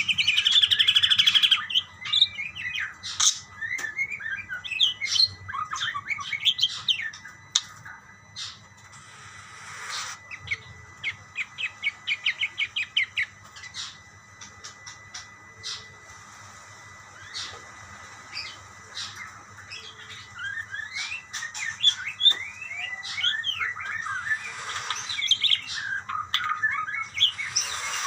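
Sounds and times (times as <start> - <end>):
budgerigars chirping and warbling: 0.0 - 15.9, 18.3 - 28.0
harsh bird rasp: 8.4 - 10.5, 23.9 - 26.0, 26.8 - 28.0.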